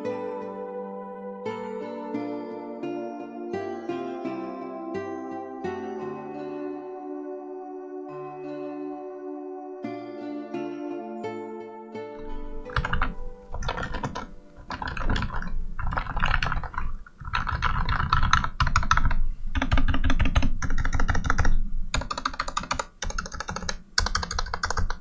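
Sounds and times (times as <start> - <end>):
soft ambient music: 0.0 - 25.0
mechanical keyboard typing: 12.2 - 25.0.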